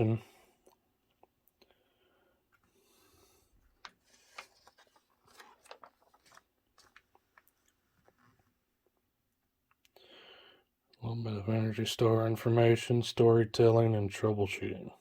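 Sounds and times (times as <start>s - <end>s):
paper rustling and crinkling: 3.6s - 8.6s.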